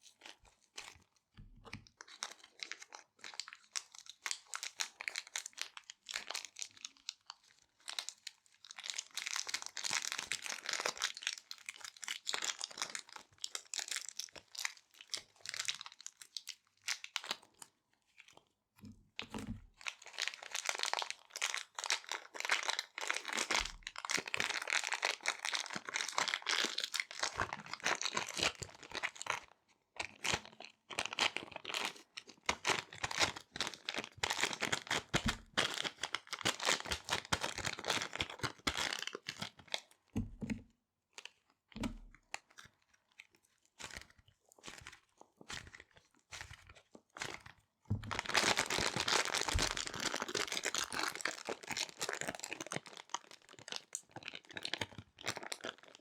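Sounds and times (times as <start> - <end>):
plastic bags crinkling: 47.2 - 56.0.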